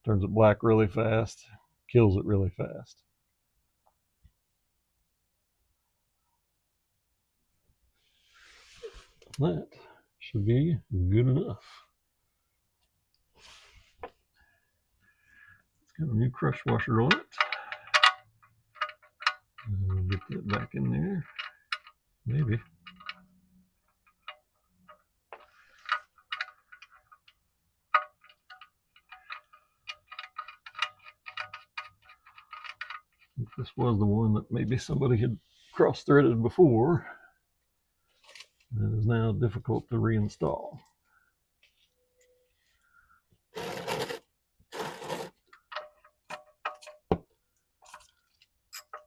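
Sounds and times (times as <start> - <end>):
metallic clicks and clinks of tools: 16.5 - 23.3, 24.0 - 33.4, 44.8 - 47.1, 47.8 - 49.0.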